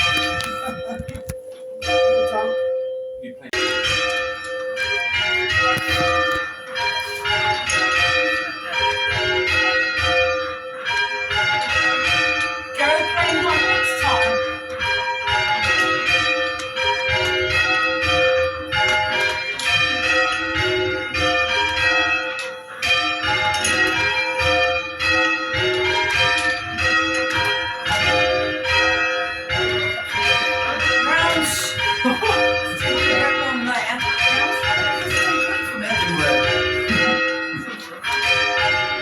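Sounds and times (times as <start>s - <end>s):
church bells ringing: 0.0s - 39.0s.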